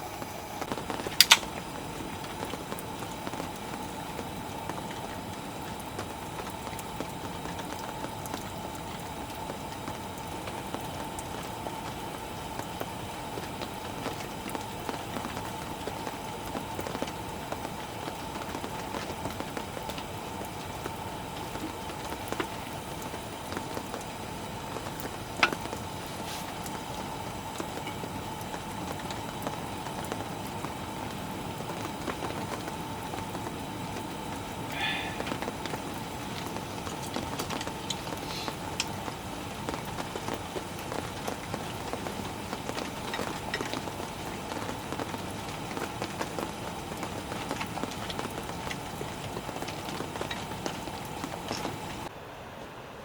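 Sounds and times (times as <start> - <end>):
steady rain falling: 0.0 - 53.0
sharp clicks: 0.6 - 1.6.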